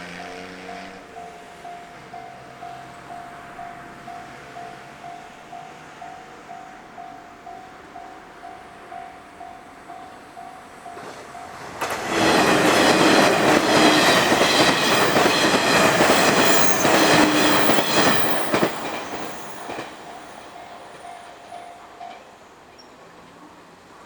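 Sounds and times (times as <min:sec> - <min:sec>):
level-crossing warning bell: 0:00.0 - 0:23.0
electric train passing: 0:00.0 - 0:24.0
wheels clacking over rail joints: 0:10.0 - 0:22.9.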